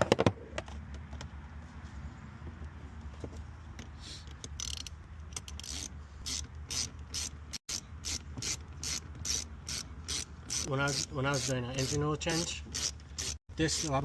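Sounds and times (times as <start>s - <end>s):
ratcheting screwdriver clicking: 4.4s - 12.0s.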